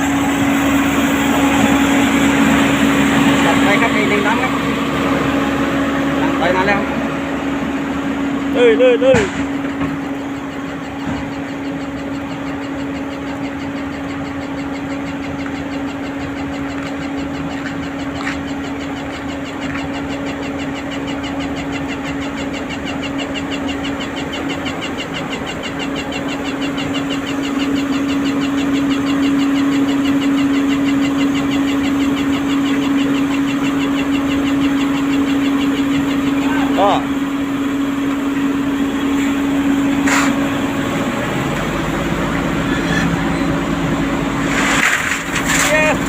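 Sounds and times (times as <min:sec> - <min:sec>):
diesel engine humming: 0:00.0 - 0:46.0
fast high ticking: 0:10.0 - 0:40.0.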